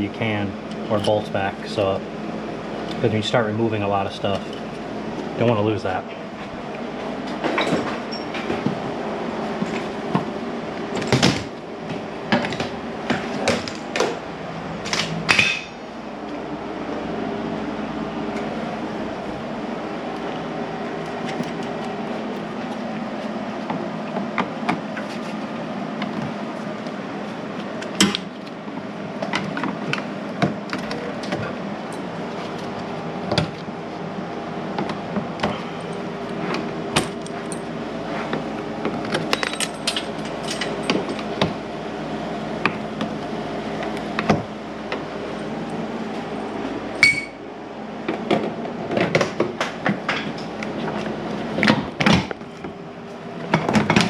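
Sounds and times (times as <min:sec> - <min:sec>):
steady background hum: 0:00.0 - 0:54.0
metal hand tools clinking: 0:21.0 - 0:22.6.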